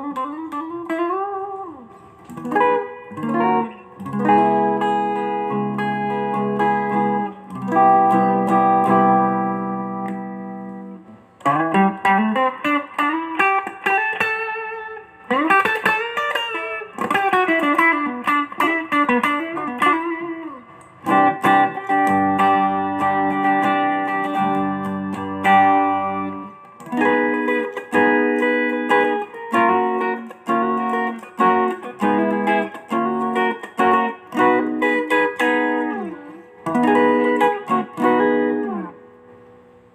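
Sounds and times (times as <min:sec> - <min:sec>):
electric guitar playing: 0:00.0 - 0:39.9.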